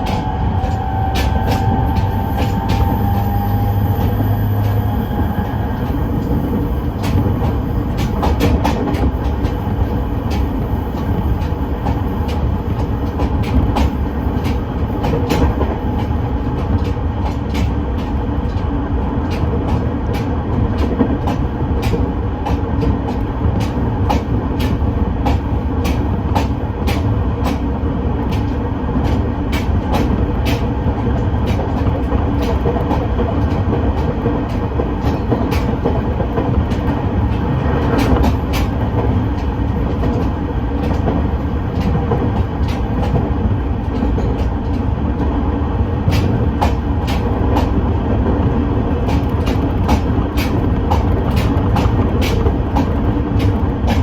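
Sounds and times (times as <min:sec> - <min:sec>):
wheels clicking over rail joints: 0:00.0 - 0:45.4, 0:46.0 - 0:54.0
train rumbling on rails: 0:00.0 - 0:54.0.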